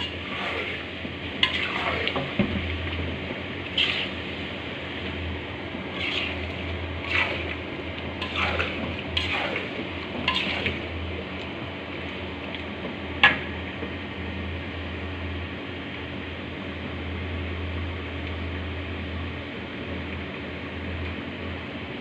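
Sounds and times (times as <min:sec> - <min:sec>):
utensil scraping cooking pan: 0:00.0 - 0:11.3
steady low hum: 0:00.0 - 0:22.0.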